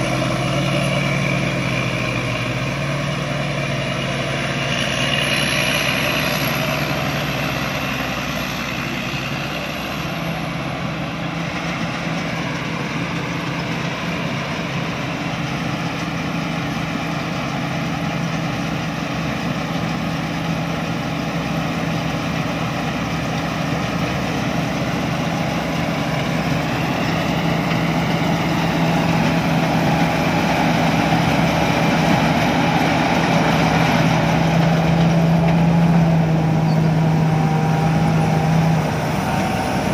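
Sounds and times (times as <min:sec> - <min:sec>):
combine harvester humming: 0:00.0 - 0:39.9.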